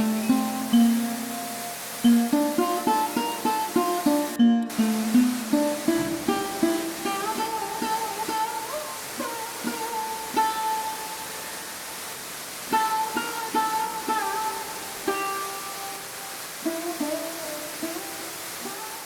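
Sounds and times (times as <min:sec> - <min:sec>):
held melody line: 0:00.0 - 0:11.7
plucked strings tune: 0:00.0 - 0:19.0.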